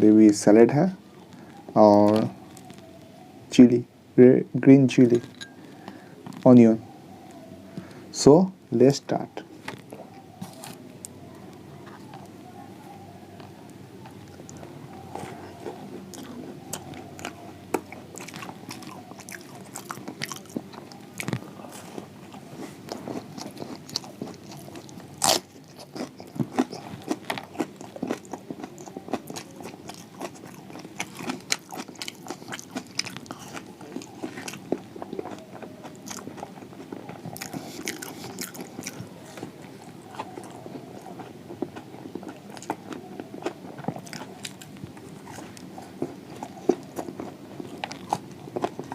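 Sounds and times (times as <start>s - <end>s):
chewing: 1.2s - 3.3s, 9.6s - 48.9s
crunchy bites of fried pastry: 14.0s - 48.9s.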